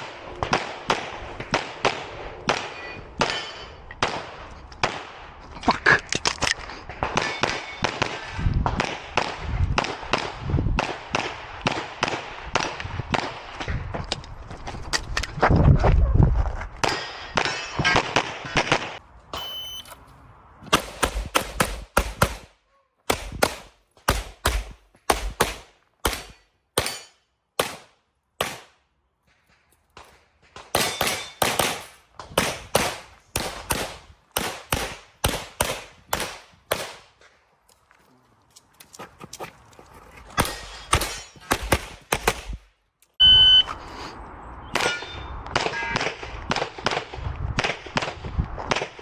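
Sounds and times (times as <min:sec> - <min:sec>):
short electronic beep: 0:19.4 - 0:20.0, 0:43.2 - 0:43.8
handgun shots: 0:20.8 - 0:22.5, 0:23.1 - 0:28.7, 0:30.7 - 0:37.0.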